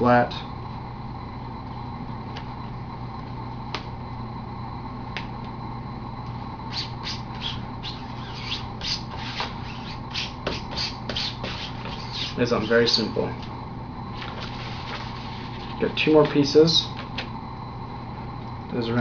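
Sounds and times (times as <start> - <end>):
steady low hum: 0.0 - 19.0
fingers rubbing vinyl skin: 6.7 - 12.8
scratchy rubbing strokes: 6.7 - 12.9.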